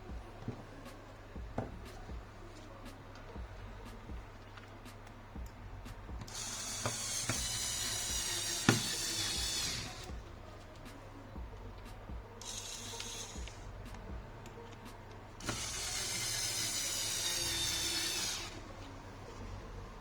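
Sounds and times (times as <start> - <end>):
electric drill motor running: 6.2 - 10.8, 12.4 - 19.7.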